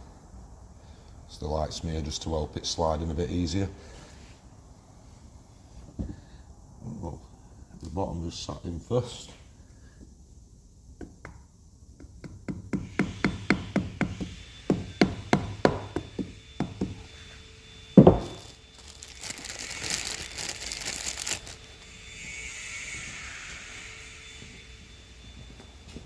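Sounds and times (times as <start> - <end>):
heavy thud: 18.0 - 18.5
scraping and rustling: 18.0 - 21.9.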